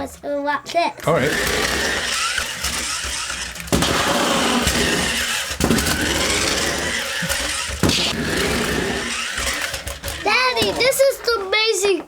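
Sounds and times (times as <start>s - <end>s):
toy car motors whirring: 0.8s - 12.0s
sharp knocks: 7.6s - 8.2s.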